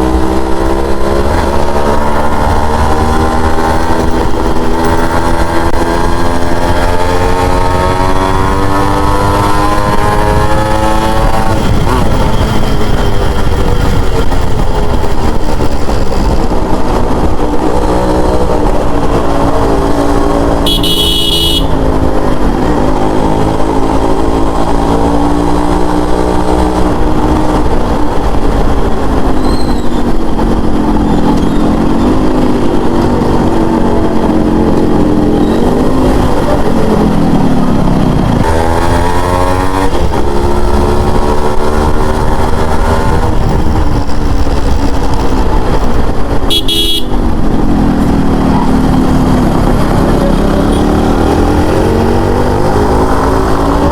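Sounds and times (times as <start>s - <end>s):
two-stroke motorcycle engine running: 0.0s - 53.9s
motorcycle horn: 20.5s - 21.8s, 46.4s - 47.3s.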